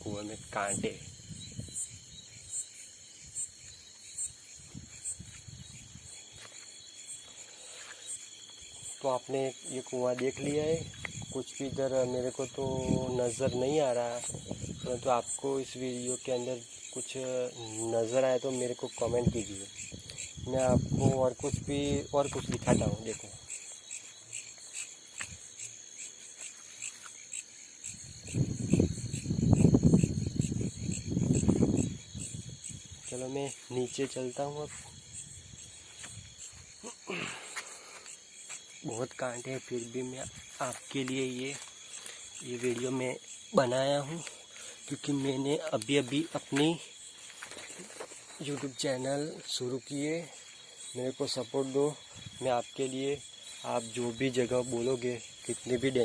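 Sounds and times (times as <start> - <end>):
crickets chirping: 0.0 - 56.0
high insect hum: 0.0 - 56.0
microphone noise rumble: 28.3 - 32.6.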